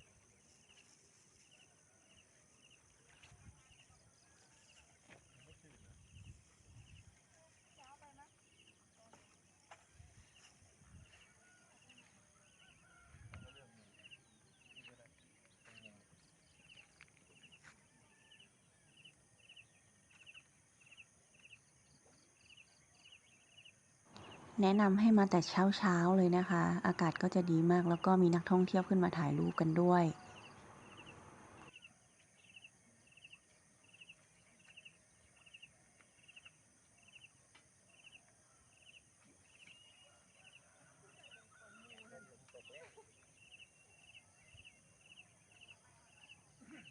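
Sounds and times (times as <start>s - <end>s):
faint outdoor ambience: 0.0s - 46.9s
insect chirping: 30.1s - 40.0s.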